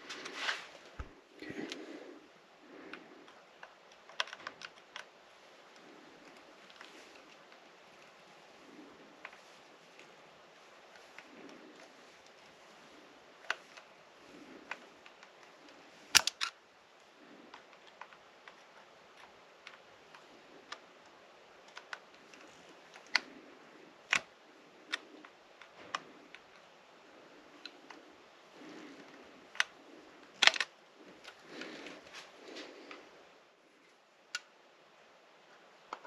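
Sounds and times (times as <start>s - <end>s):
hand tools clicking and tapping: 2.9s - 8.2s, 13.4s - 16.5s.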